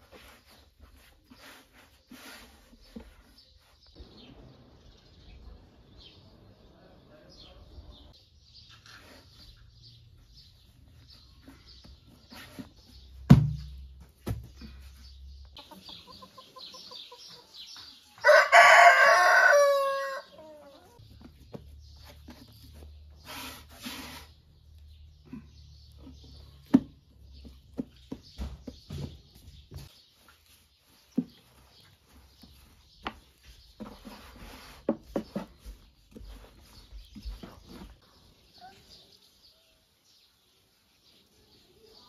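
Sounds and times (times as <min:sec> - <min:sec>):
rooster crowing: 0:18.2 - 0:20.6.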